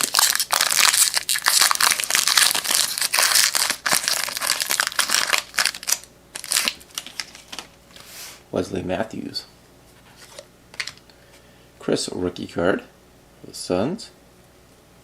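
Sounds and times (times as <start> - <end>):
plastic wrapper tearing and crinkling: 0.0 - 7.8.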